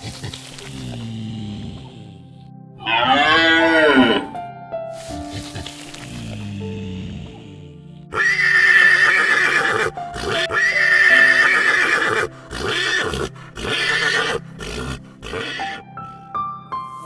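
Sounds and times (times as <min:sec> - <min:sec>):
background music: 0:00.0 - 0:17.0
horse neighing: 0:02.8 - 0:04.3, 0:08.1 - 0:15.8.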